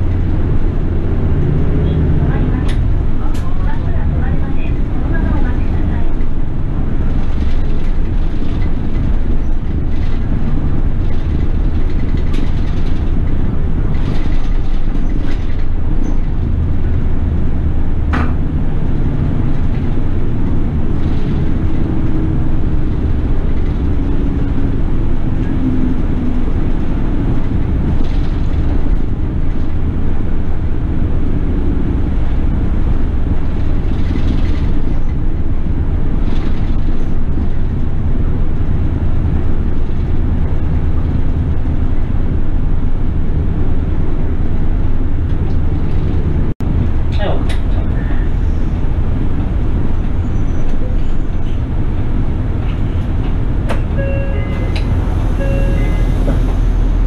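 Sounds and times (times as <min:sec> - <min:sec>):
bus engine and road rumble: 0:00.0 - 0:57.0
faint whine: 0:53.9 - 0:57.0.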